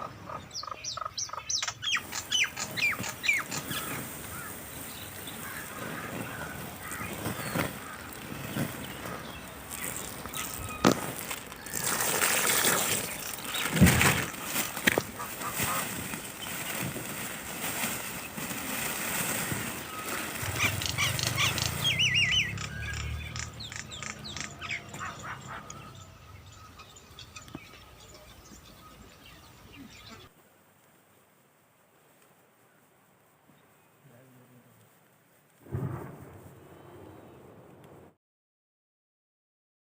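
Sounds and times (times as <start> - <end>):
small birds chirping: 0.0 - 30.4
rustling: 2.0 - 25.1, 29.8 - 37.9.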